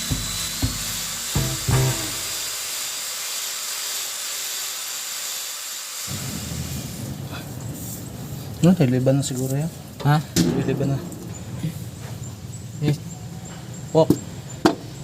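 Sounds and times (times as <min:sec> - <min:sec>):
die grinder running high speed: 0:00.0 - 0:06.1.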